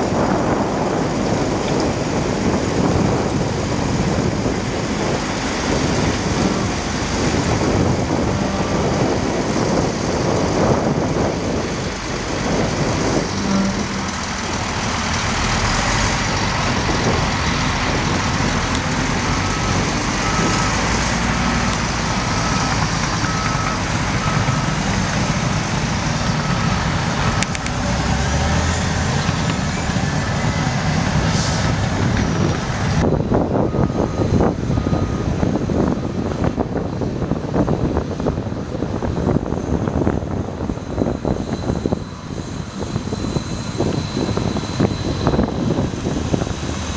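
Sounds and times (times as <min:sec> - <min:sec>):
diesel truck engine running: 0:00.0 - 0:46.9
reversing alarm beeps: 0:07.8 - 0:09.7, 0:19.2 - 0:21.0, 0:22.2 - 0:24.9, 0:33.5 - 0:35.9.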